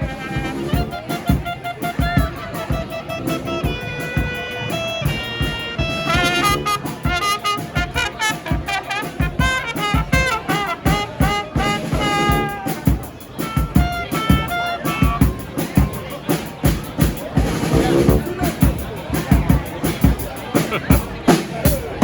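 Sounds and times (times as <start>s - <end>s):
brass horns playing melody: 0.0s - 15.3s, 17.4s - 18.7s
steady drum beat: 0.0s - 22.0s.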